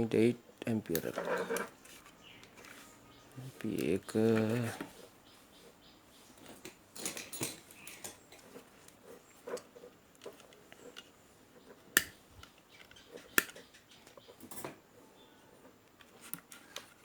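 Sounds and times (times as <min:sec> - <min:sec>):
tools and parts clicking: 0:06.6 - 0:08.6
sharp clicks: 0:12.0 - 0:14.2.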